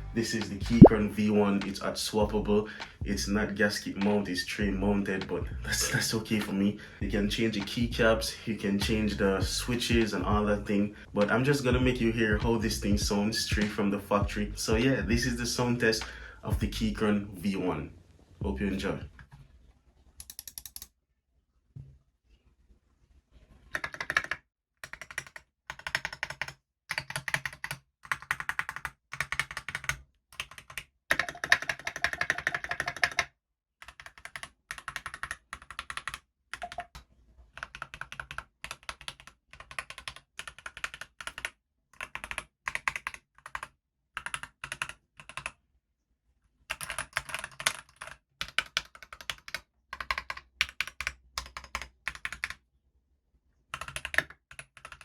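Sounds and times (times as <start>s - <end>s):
mechanical keyboard keys clacking: 23.8s - 37.0s, 46.7s - 52.6s, 53.8s - 55.0s.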